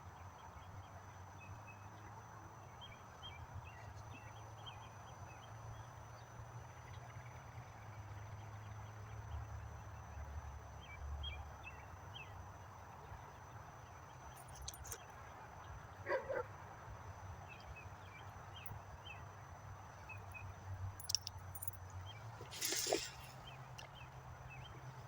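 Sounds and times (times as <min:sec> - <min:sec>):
small clicks: 0:21.0 - 0:21.8.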